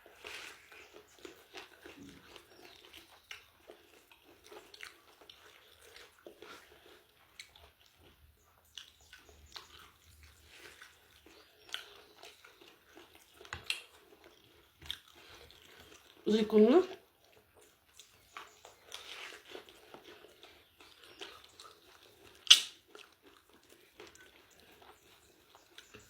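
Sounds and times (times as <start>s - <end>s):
crunchy chewing: 0.0s - 16.3s, 16.9s - 26.0s
mouth clicks: 22.4s - 22.8s.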